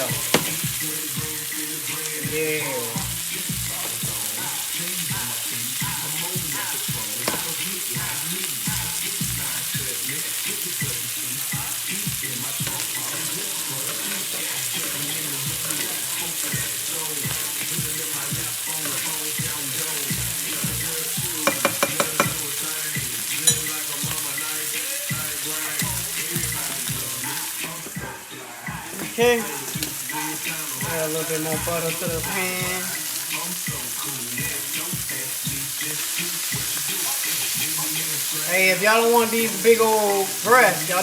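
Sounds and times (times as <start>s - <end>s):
chicken sizzling in a pan: 0.0s - 41.0s.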